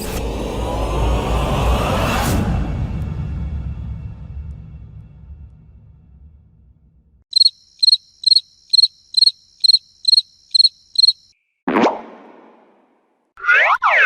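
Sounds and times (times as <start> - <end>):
crickets chirping: 7.3 - 11.4
sudden sound effect: 11.7 - 13.0.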